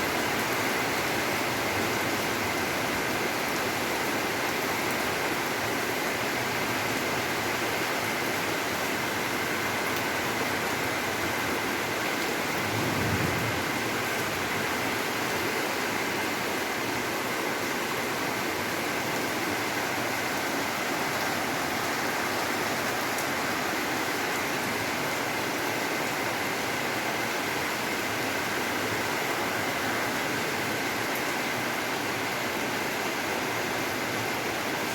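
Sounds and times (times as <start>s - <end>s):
heavy rain falling: 0.0s - 34.9s.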